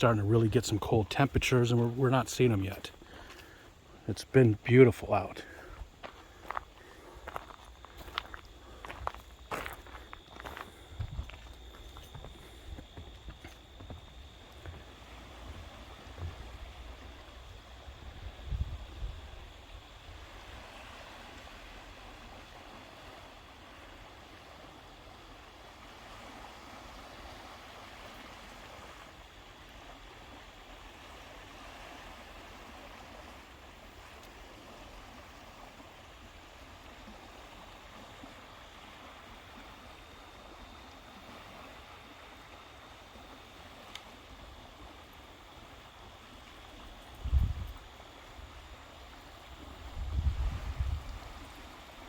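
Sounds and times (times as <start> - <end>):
waves breaking on shore: 0.0 - 52.0
wind rumble on microphone: 10.7 - 22.8, 47.0 - 48.8, 49.4 - 52.0
faint click: 43.9 - 44.1.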